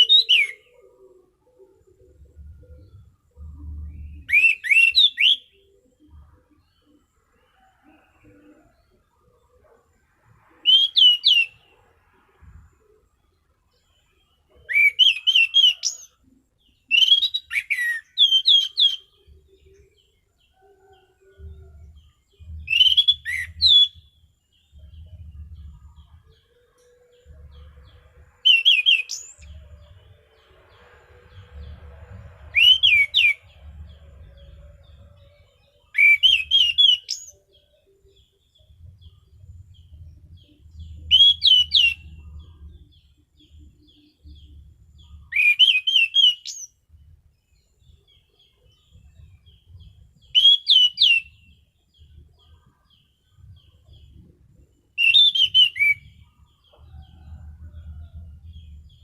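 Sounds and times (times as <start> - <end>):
thrush singing whistled notes: 0.0 - 7.0, 7.7 - 47.0, 47.6 - 52.8, 53.4 - 57.5
faint low rumble: 0.7 - 4.4, 5.6 - 10.7, 19.0 - 36.7, 37.3 - 45.4, 56.0 - 59.0.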